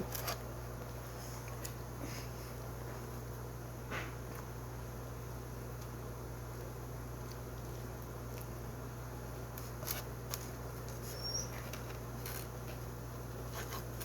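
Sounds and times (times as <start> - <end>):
low electrical hum: 0.0 - 14.0
brief high squeak: 11.1 - 11.6.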